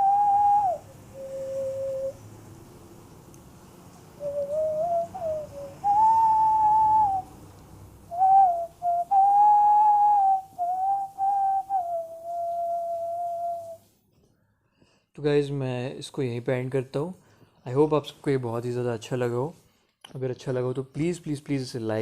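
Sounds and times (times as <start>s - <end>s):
person whistling a melody: 0.0s - 2.2s, 4.2s - 7.3s, 8.1s - 13.9s.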